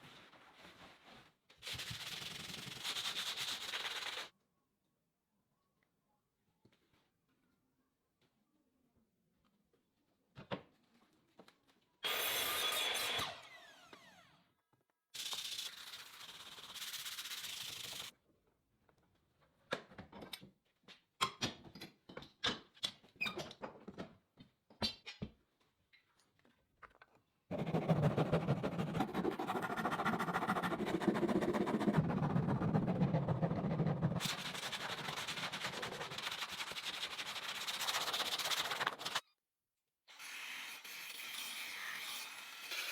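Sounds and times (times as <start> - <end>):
quick taps and scrapes: 26.9 - 39.2
sanding on wood: 27.5 - 39.2.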